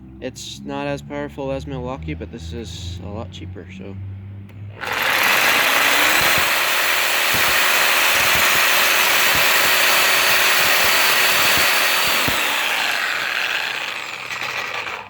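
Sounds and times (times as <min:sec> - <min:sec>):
reciprocating saw cutting: 0:04.5 - 0:15.0.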